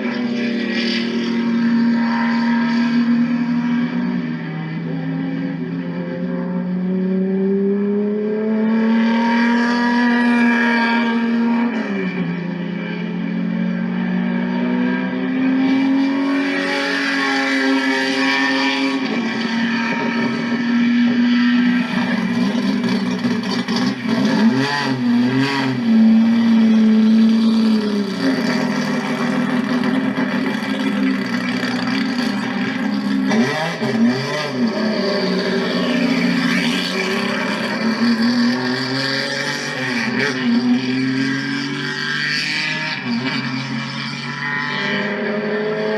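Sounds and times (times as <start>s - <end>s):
race car engine revving: 0.0s - 45.9s.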